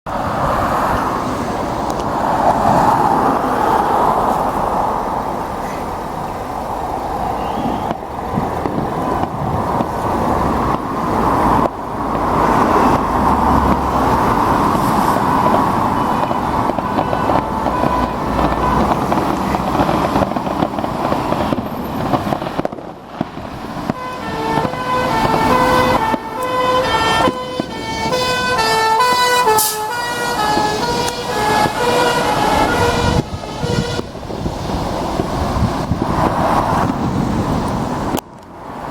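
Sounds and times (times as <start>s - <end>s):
fire engine running: 0.1s - 38.9s
siren alternating high and low: 24.0s - 34.3s.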